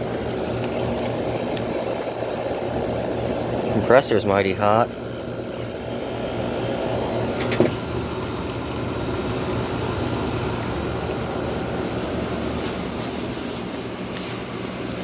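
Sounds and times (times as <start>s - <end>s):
air conditioner humming: 0.0s - 15.0s.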